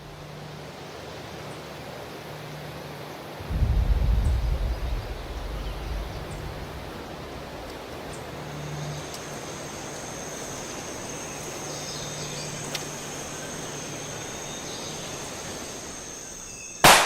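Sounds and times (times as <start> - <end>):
background hiss: 0.0 - 17.0
high insect trill: 0.0 - 17.0
faint low hum: 3.4 - 9.3.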